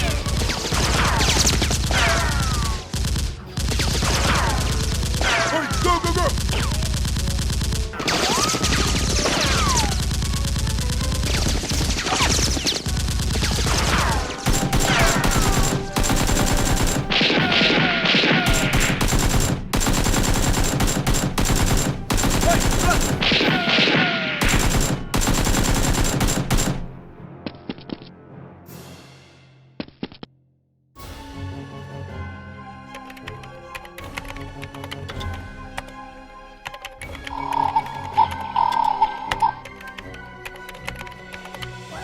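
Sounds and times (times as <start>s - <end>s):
rapid automatic gunfire: 0.0s - 26.9s.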